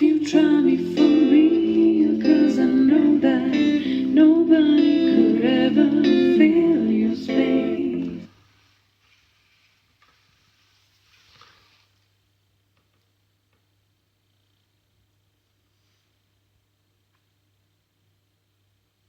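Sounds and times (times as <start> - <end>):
song with guitar and singing: 0.0 - 8.3.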